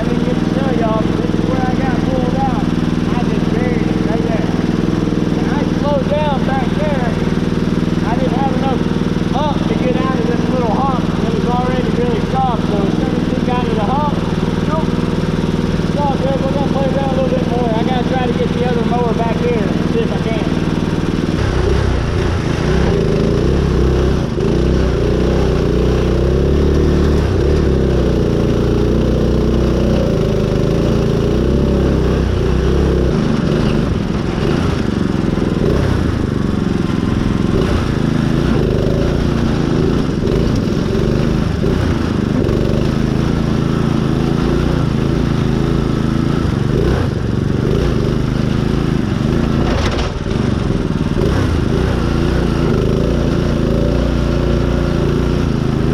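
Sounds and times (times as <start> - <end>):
heavy low rumble: 0.0 - 25.8
mower engine running hard: 0.0 - 55.9.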